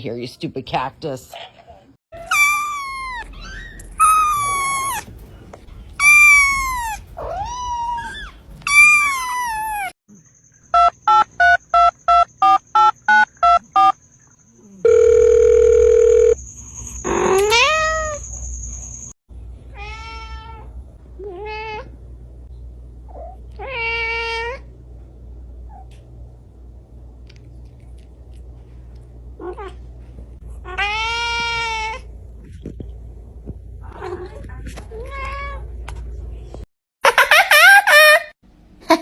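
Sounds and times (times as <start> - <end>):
cat meowing: 2.2 - 5.1, 6.0 - 9.9.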